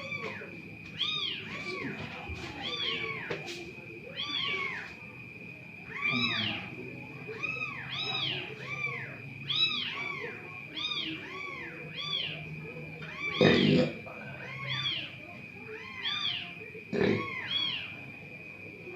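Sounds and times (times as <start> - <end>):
cat meowing: 0.0 - 3.4, 4.1 - 4.9, 5.9 - 12.4, 13.0 - 17.9
faint steady high tone: 0.0 - 18.9.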